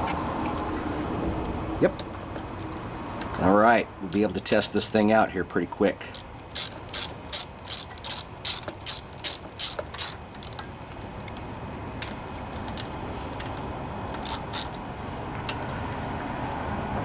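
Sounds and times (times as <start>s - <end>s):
ratchet wrench clicking: 4.1s - 5.0s, 6.1s - 10.7s, 12.0s - 14.8s.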